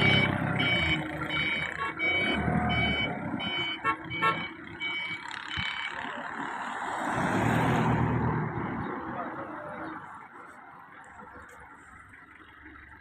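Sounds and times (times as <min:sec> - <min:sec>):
vehicle warning beeper: 0:00.0 - 0:06.4
engine running low: 0:00.0 - 0:06.6, 0:08.4 - 0:13.0.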